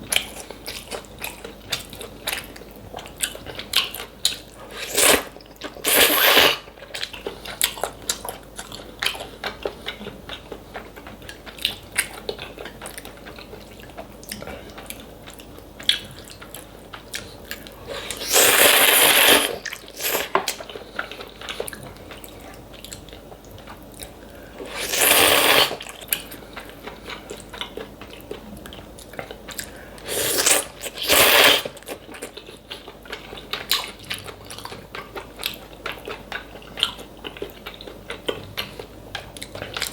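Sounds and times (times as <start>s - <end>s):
chewing food: 0.0s - 39.9s
food crunching: 0.1s - 39.9s
noodle slurps: 4.7s - 6.7s, 17.9s - 20.4s, 24.6s - 25.9s, 30.0s - 31.8s.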